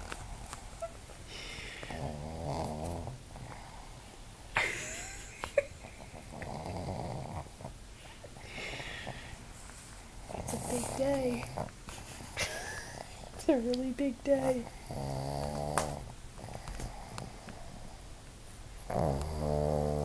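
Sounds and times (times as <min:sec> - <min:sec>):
dog snoring: 0:01.8 - 0:04.0, 0:05.8 - 0:07.8, 0:10.2 - 0:13.3, 0:14.6 - 0:18.0, 0:18.8 - 0:20.0.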